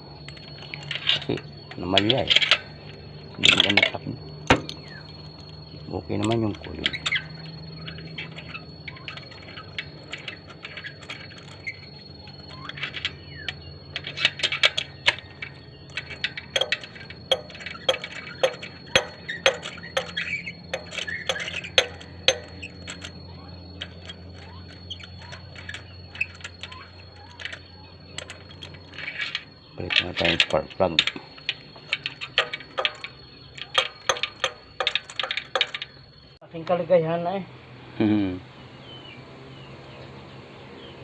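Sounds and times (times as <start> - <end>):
steady low hum: 0.0 - 41.0
metallic clicks of hand tools: 14.0 - 23.2, 28.2 - 36.0.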